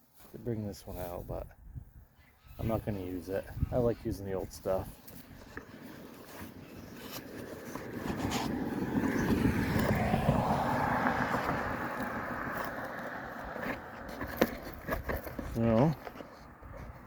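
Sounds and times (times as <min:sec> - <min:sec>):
motor vehicle driving past: 0:07.7 - 0:14.1.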